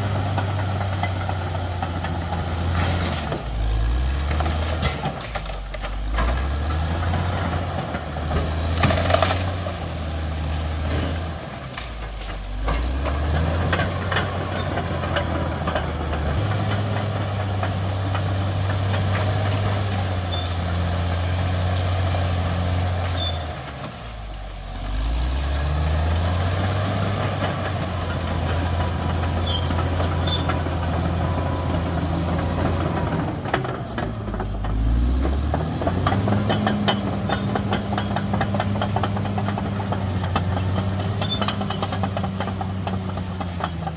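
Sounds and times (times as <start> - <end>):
bulldozer diesel engine working: 0.0 - 43.9
short cracks and clanks: 8.7 - 10.2.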